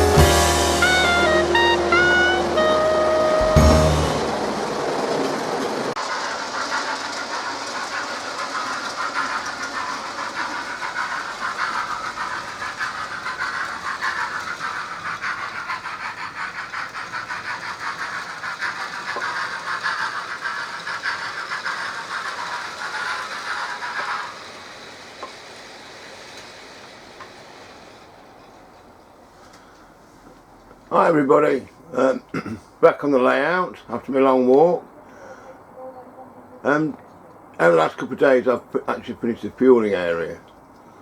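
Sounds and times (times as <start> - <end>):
model train wheels clattering on rails: 5.0 - 34.7.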